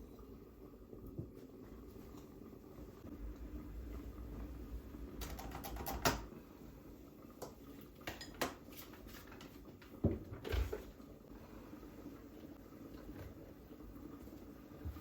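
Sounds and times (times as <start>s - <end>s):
low hum: 2.9s - 5.4s
household items clicking and clinking: 5.2s - 6.3s.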